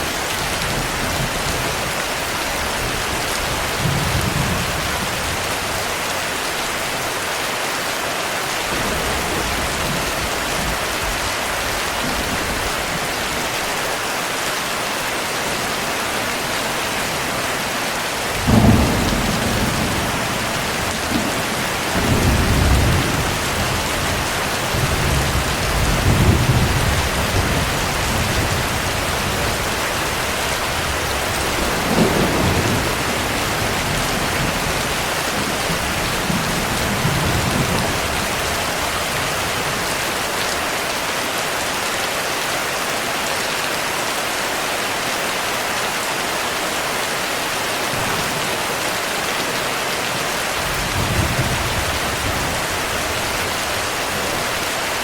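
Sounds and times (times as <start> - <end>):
heavy steady rain: 0.0 - 55.0
distant thunder rumbling: 8.7 - 11.2, 16.3 - 38.4.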